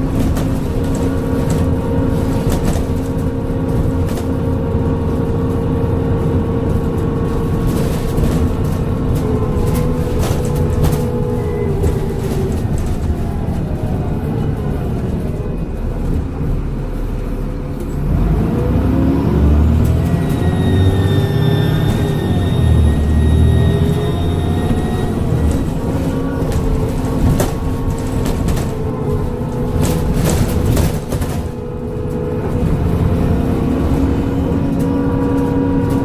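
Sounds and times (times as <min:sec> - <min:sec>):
bus engine pulling: 0:00.0 - 0:36.0
high turbocharger whistle: 0:20.2 - 0:24.8.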